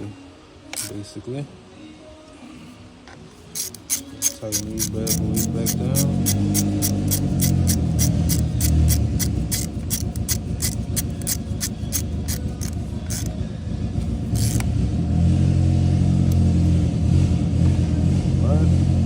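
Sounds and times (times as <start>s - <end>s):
hand ratchet clicking: 0.8s - 1.0s, 3.5s - 13.4s, 14.3s - 14.7s
steady low rumble: 7.1s - 19.0s.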